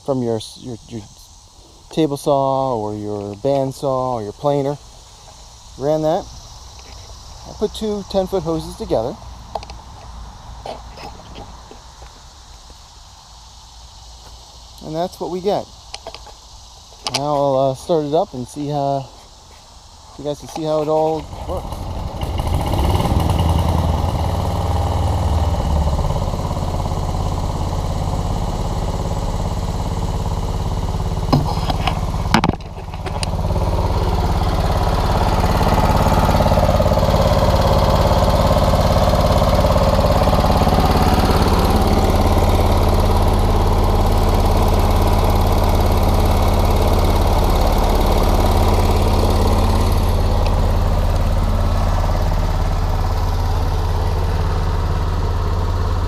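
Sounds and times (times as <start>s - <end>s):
small engine machinery running: 19.9s - 56.0s
sharp knocks: 31.3s - 33.2s.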